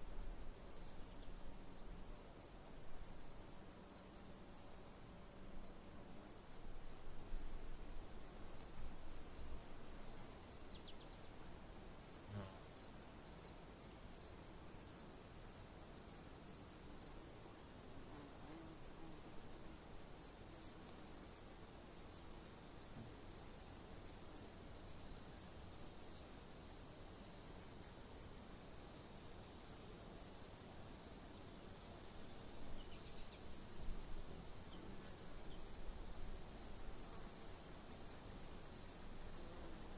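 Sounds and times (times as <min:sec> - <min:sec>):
rapid lower insect chirps: 0:05.8 - 0:21.4, 0:22.0 - 0:39.9.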